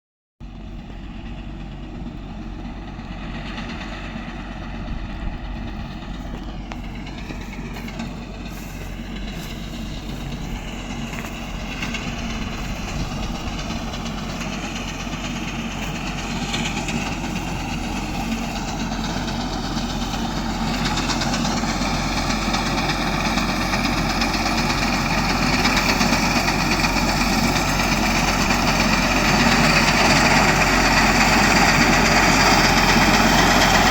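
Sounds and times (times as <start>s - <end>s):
harvesting machine engine drone: 0.4s - 33.9s.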